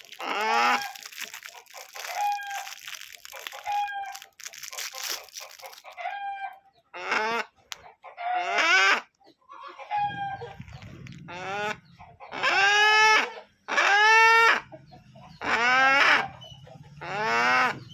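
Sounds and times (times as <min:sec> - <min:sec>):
chickens clucking and squawking: 0:00.0 - 0:17.9.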